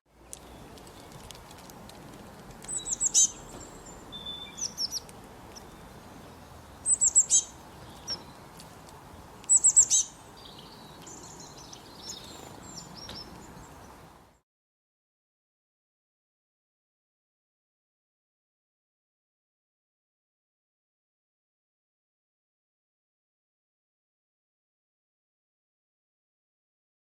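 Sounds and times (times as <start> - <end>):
small bird calling: 2.7 - 8.5, 9.4 - 14.1.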